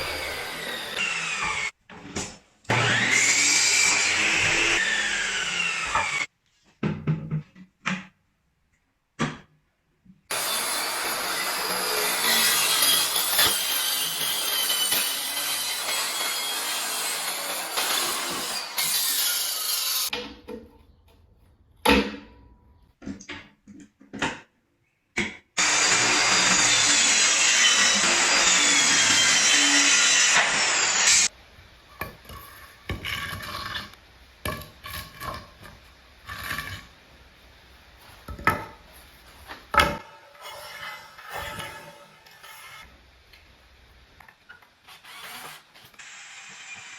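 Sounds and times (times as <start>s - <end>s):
power saw cutting wood: 0.0s - 1.7s, 2.7s - 6.3s, 10.3s - 20.1s, 25.6s - 31.3s, 45.0s - 46.9s.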